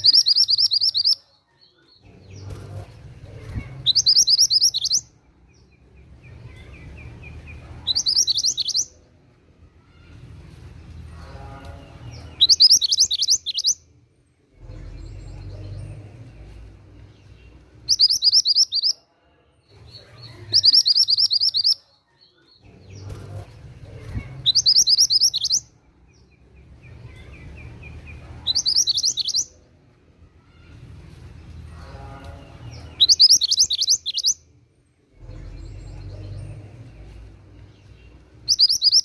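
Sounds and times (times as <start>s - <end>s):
songbird chirping: 0.0s - 39.0s.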